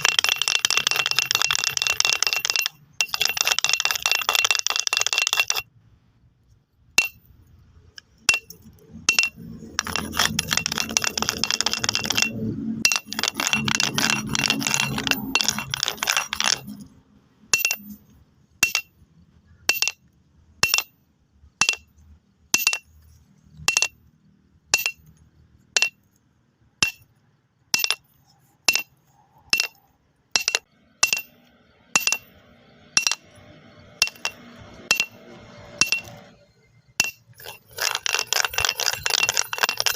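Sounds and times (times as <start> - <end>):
stone-on-stone clicks: 0.0 - 5.7, 6.5 - 21.0, 21.6 - 39.9
stones clattering together: 8.0 - 16.9, 29.6 - 29.8, 33.0 - 35.2, 37.0 - 39.9.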